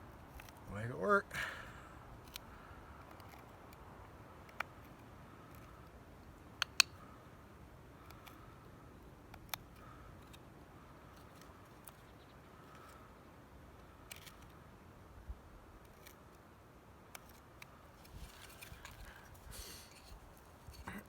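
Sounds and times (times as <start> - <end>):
knife cutting wood: 2.2 - 3.8, 17.1 - 21.0.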